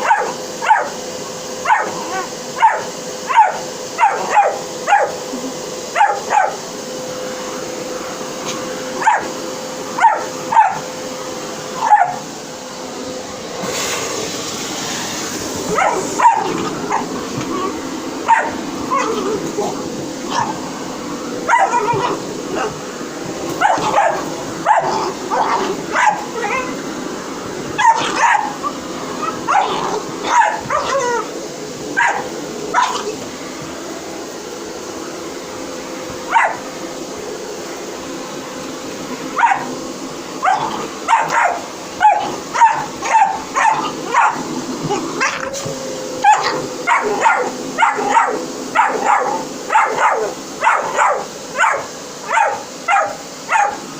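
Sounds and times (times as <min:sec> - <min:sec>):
dog barking and yelping: 0:00.0 - 0:01.0, 0:01.6 - 0:05.3, 0:05.9 - 0:06.6, 0:08.5 - 0:11.0, 0:11.7 - 0:12.3, 0:15.5 - 0:26.9, 0:27.7 - 0:33.3, 0:36.2 - 0:36.7, 0:39.3 - 0:39.8, 0:40.4 - 0:53.9
vacuum cleaner humming: 0:00.0 - 0:53.9.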